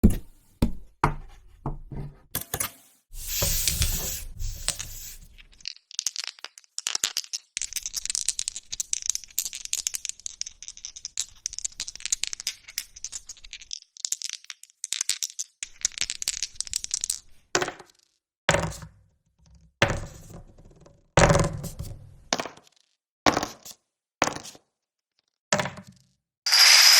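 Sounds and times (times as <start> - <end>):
game pieces rattling: 4.6 - 17.2.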